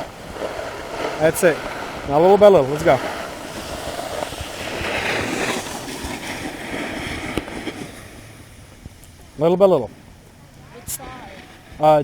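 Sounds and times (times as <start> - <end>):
snowboard scraping over icy snow: 0.0 - 8.6.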